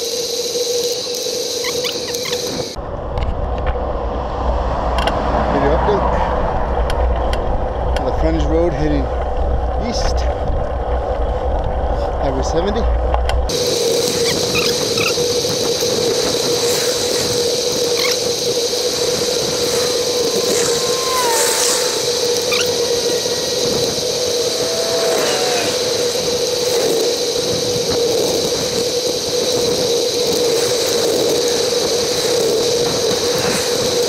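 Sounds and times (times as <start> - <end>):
constant hum: 0.0 - 34.0
wind and road noise: 0.0 - 34.0
brief gliding tones: 19.4 - 23.5.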